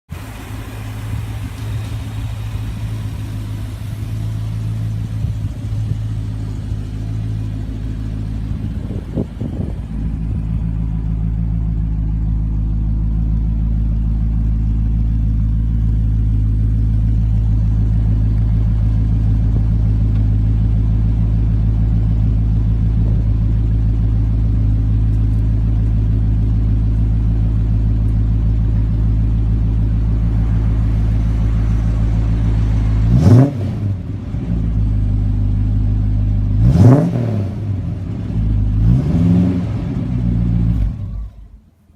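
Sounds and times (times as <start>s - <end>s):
car engine running: 0.1s - 41.9s.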